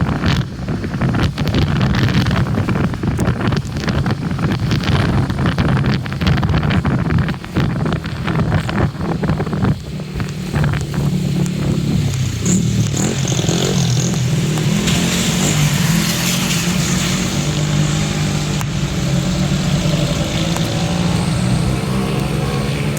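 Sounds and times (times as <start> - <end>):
car engines droning: 7.0 - 22.9
tyres hissing on road: 7.1 - 22.9.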